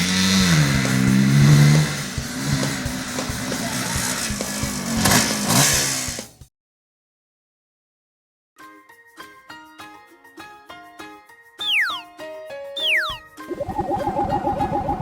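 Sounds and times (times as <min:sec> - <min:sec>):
engine revving: 0:00.0 - 0:06.3.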